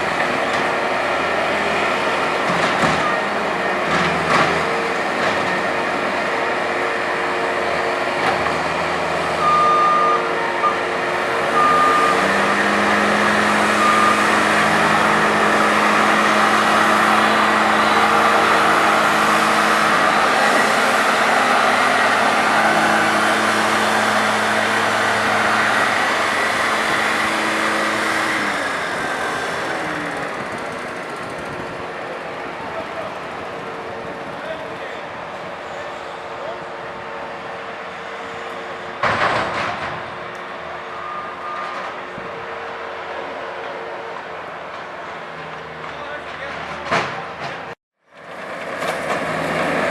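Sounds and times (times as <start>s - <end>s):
diesel engine revving: 0.0s - 49.9s
reversing alarm beeps: 9.4s - 10.8s, 11.5s - 12.5s, 13.6s - 14.6s, 40.9s - 41.8s.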